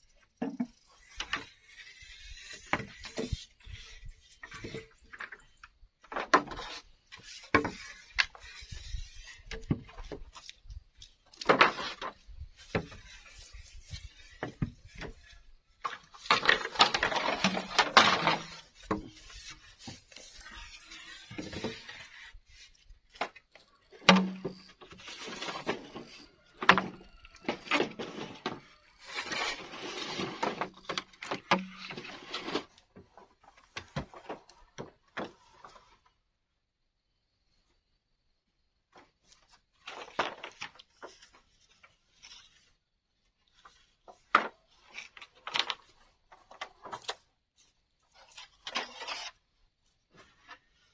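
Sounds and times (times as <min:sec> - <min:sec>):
wood rasping and scraping: 0:00.8 - 0:05.6, 0:06.4 - 0:23.7, 0:24.4 - 0:32.8, 0:48.2 - 0:49.5.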